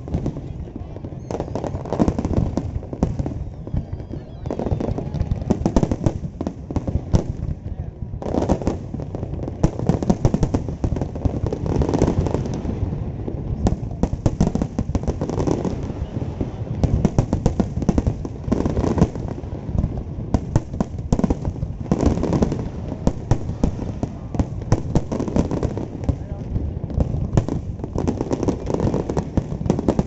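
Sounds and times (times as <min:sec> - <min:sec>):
fireworks bangs and crackling: 0:00.0 - 0:30.0.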